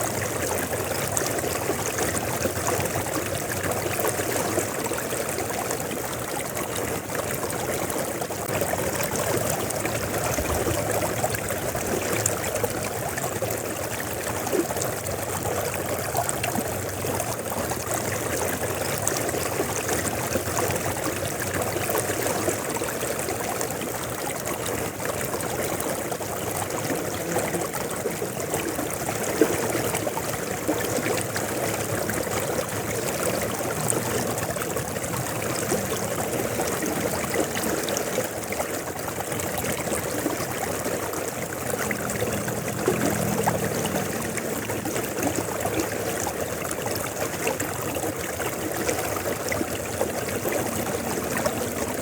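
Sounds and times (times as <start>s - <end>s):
river water flowing over stones: 0.0s - 52.0s.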